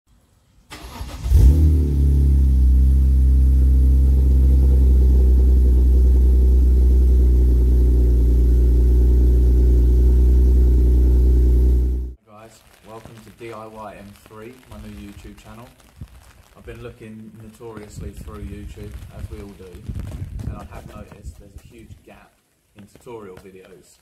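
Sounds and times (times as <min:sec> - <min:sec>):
car engine starting and idling: 0:00.7 - 0:12.2.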